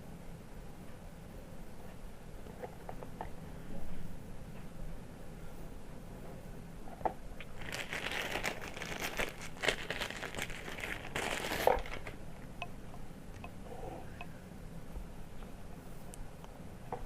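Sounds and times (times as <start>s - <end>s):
plastic packaging crinkling: 7.4s - 12.2s.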